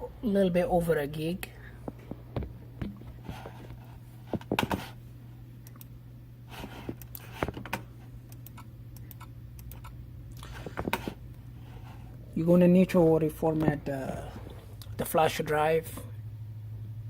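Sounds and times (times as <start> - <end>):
steady low hum: 0.0 - 17.0
keyboard and mouse clicks: 6.8 - 10.0.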